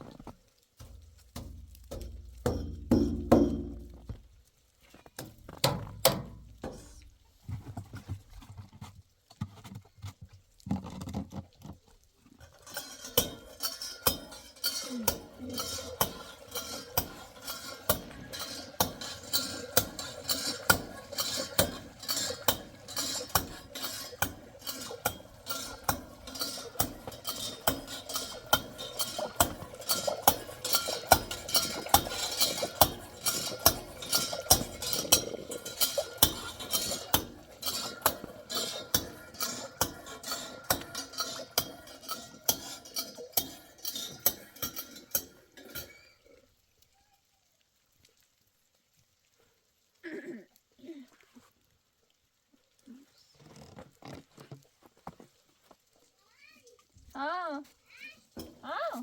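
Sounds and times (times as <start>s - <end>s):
utensil clinking against pot: 0.8s - 4.0s, 12.4s - 46.0s
dishes and utensils clinking: 12.5s - 46.1s.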